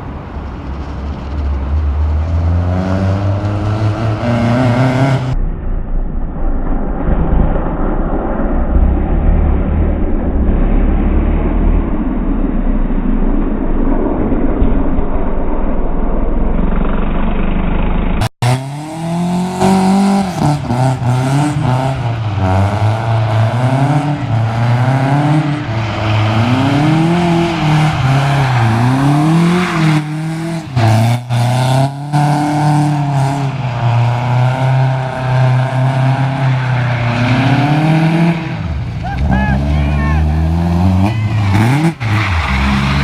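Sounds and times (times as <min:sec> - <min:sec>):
car engine revving: 0:00.2 - 0:43.0
muffled noise: 0:05.0 - 0:18.3.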